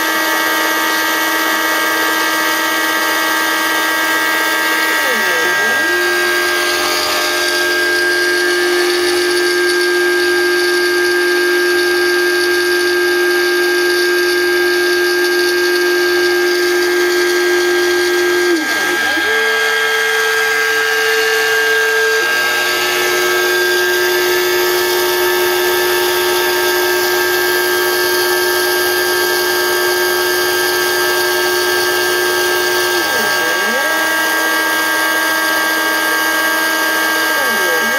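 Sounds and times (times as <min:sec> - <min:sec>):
motor whine: 0:00.0 - 0:37.9
router spindle running: 0:00.0 - 0:37.9.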